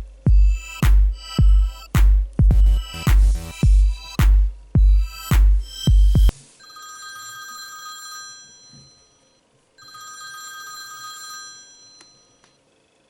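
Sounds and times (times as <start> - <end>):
telephone trilling electronic ring: 6.6 - 12.4.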